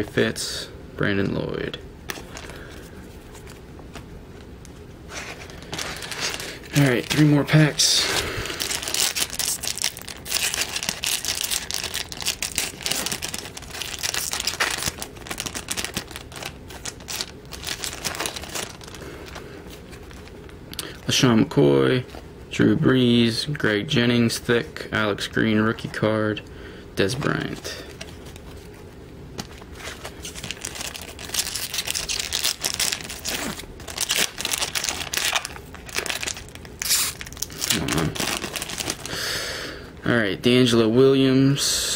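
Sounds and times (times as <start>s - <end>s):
plastic wrapper crinkling: 5.1s - 21.2s, 29.4s - 39.2s.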